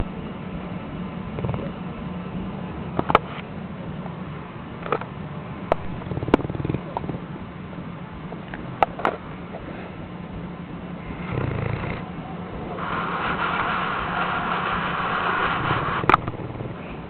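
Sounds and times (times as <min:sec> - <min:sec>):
dog snoring: 0:01.4 - 0:01.8, 0:05.9 - 0:07.2, 0:11.0 - 0:12.1, 0:12.8 - 0:17.0.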